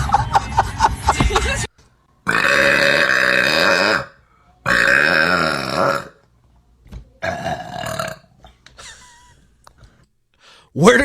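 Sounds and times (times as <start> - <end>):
person burping loudly: 2.2 - 6.2, 7.2 - 8.3.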